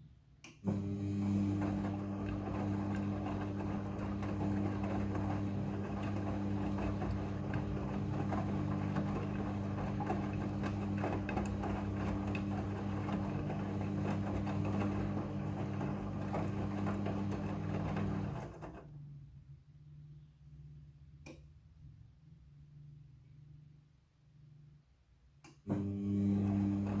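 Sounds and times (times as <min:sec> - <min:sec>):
washing machine motor hum: 0:00.6 - 0:19.2, 0:25.6 - 0:27.0.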